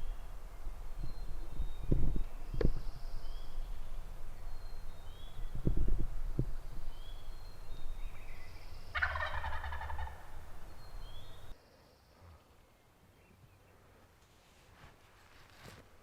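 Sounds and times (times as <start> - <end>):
small birds chirping: 0.0 - 13.9
turkey gobbling: 8.9 - 10.4.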